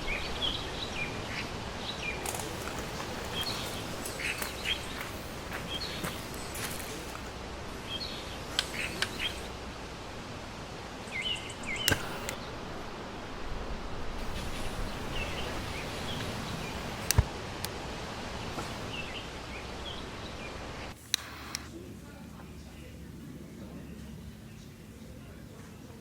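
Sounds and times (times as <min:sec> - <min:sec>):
steady hiss: 0:00.0 - 0:22.7
sharp clicks or knocks: 0:11.8 - 0:12.4, 0:17.0 - 0:17.7.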